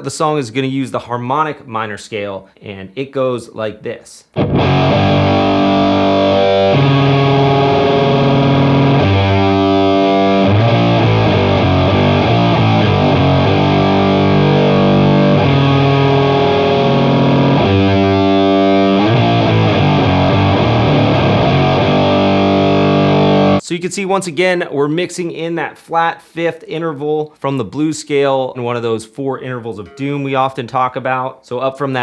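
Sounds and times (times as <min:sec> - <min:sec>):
distorted electric guitar riff: 0:04.3 - 0:23.6.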